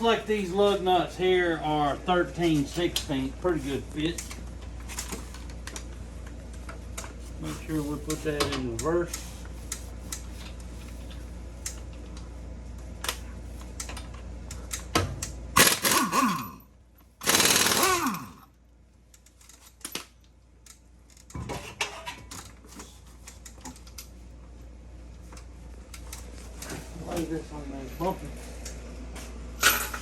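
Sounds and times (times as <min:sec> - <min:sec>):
air impact wrench: 0:15.6 - 0:16.6, 0:17.2 - 0:18.4.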